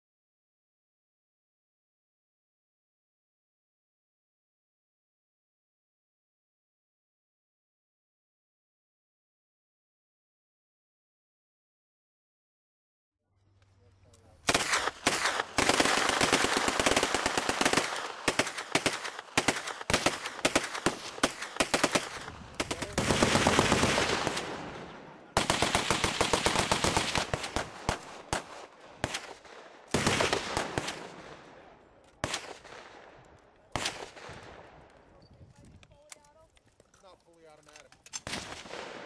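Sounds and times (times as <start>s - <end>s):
machine guns firing: 14.5s - 31.5s, 33.7s - 34.6s, 38.2s - 39.0s.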